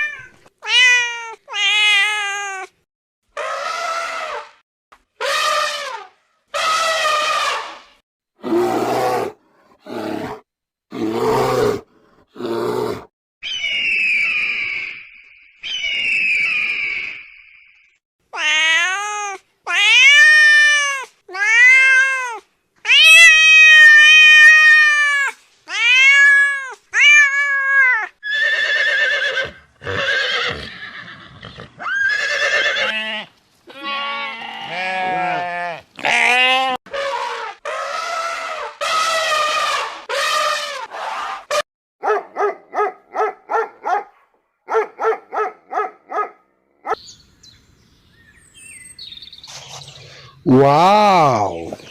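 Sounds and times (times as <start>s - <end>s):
farm animals bleating: 28.6s - 36.8s.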